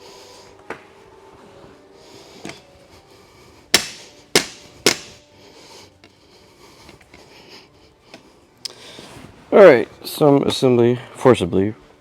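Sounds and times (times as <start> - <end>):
sharp knocks on wooden frame: 3.8 - 5.1.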